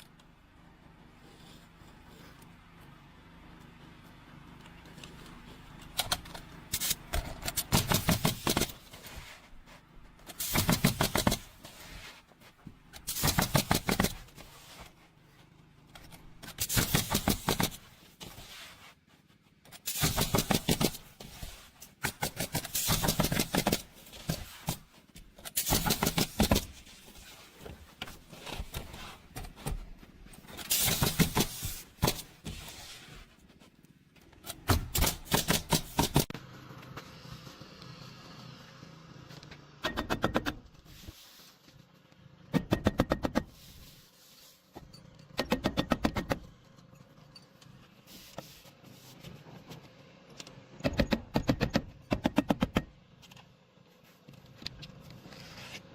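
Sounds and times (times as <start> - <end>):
rapid mechanical clicking: 5.8 - 9.0, 10.2 - 11.8, 12.9 - 14.4, 15.9 - 18.4, 19.8 - 27.2, 30.6 - 32.5, 34.4 - 36.4, 50.4 - 53.4.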